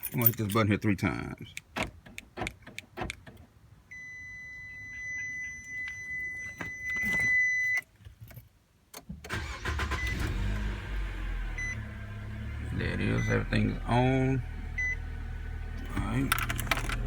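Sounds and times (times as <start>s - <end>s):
car engine cranking and idling: 9.0s - 17.0s.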